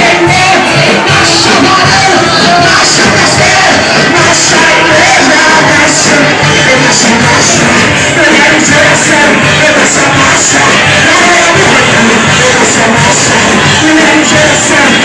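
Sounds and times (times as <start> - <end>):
loud worship music: 0.0 - 15.0
voices singing and shouting: 0.0 - 15.0.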